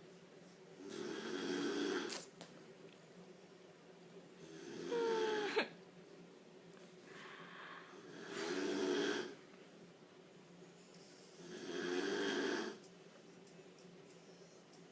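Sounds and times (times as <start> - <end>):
woman snoring: 0.8 - 2.2, 4.4 - 5.7, 7.8 - 9.4, 11.4 - 12.8
quiet breathing: 6.8 - 9.5, 10.6 - 12.9.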